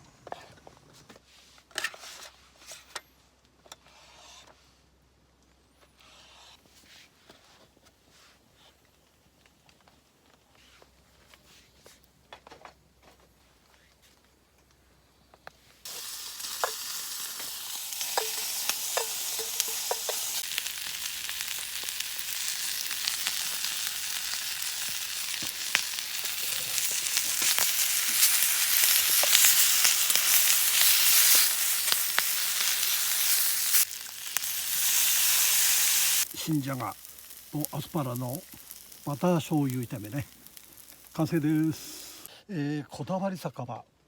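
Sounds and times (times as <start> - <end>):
vegetables sizzling in a frying pan: 15.9 - 42.3.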